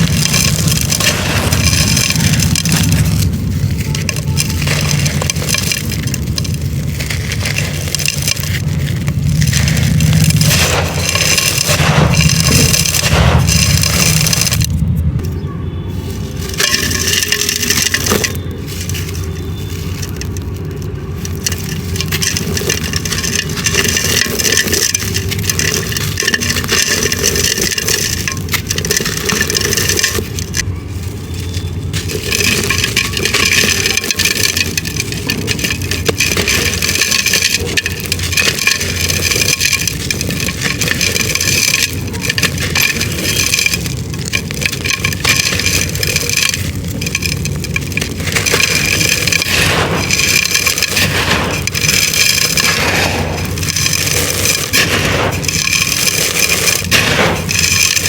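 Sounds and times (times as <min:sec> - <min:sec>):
dry clay crunching by hand: 0:00.0 - 0:58.0.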